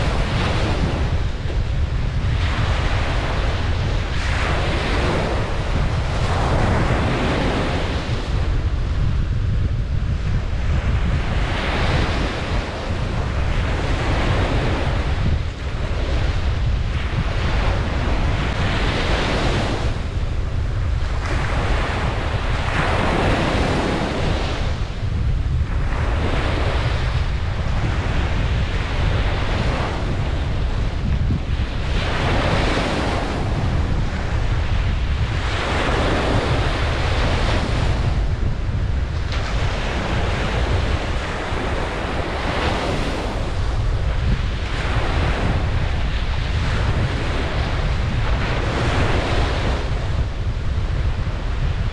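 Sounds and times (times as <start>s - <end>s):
ocean waves breaking on a beach: 0.0s - 51.9s
wind on the microphone: 0.0s - 51.9s.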